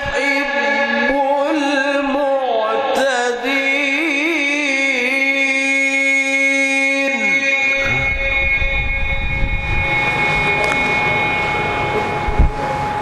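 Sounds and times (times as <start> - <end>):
man chanting melodically: 0.0 - 13.0.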